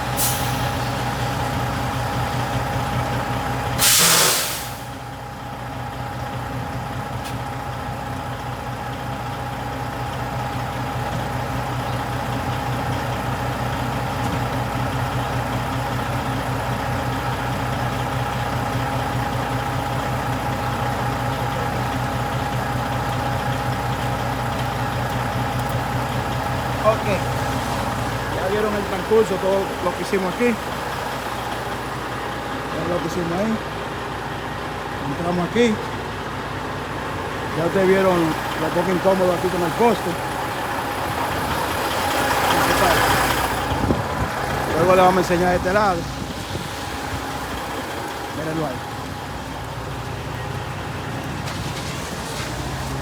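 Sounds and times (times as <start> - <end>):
truck engine idling: 0.0 - 53.0
air brake hiss: 0.1 - 1.0, 3.8 - 5.0.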